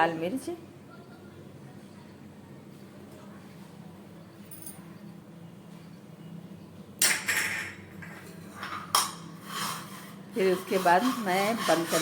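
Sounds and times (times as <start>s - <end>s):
spoon scraping a metal pot: 8.0s - 12.0s.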